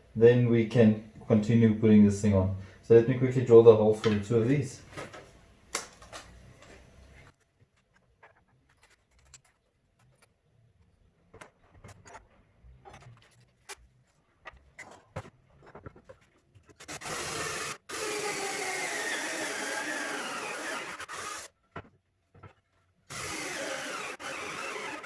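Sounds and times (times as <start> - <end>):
tools and wood clicking: 7.7 - 10.4
power drill boring into wood: 16.9 - 21.5, 23.1 - 25.0.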